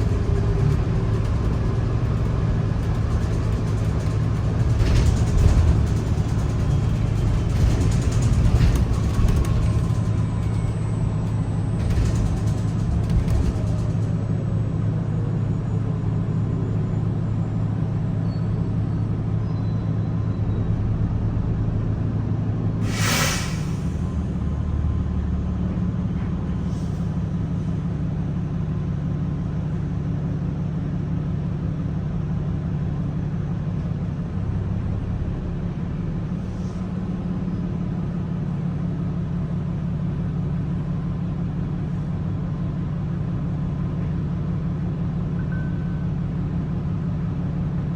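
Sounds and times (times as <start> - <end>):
bus engine drone: 0.0 - 47.9
compressed air hiss: 22.8 - 24.1.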